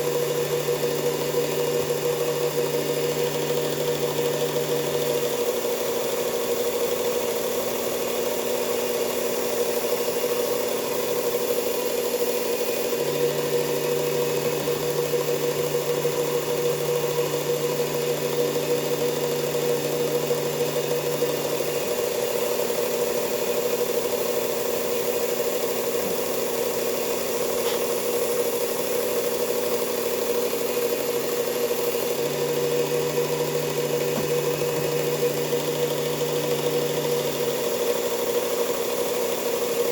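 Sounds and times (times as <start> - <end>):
belt sander motor hum: 0.0 - 39.9.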